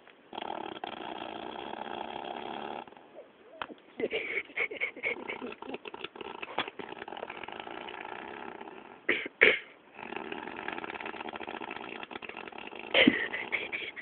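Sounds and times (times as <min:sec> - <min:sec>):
woman snoring: 0:00.4 - 0:02.9.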